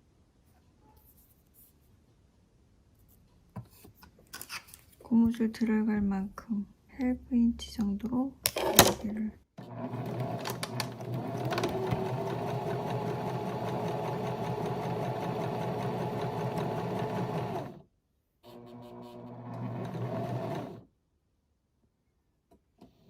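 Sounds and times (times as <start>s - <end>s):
electric sewing machine stitching: 9.6s - 17.8s, 18.5s - 20.9s.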